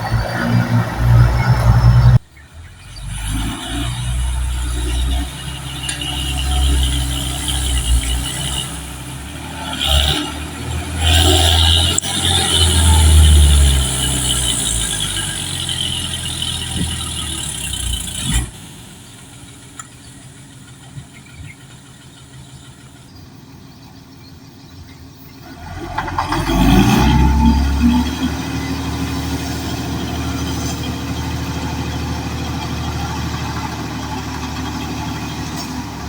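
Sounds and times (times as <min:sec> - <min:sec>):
earth-moving machine rumbling: 0:09.8 - 0:36.0
high squeal: 0:25.4 - 0:35.9.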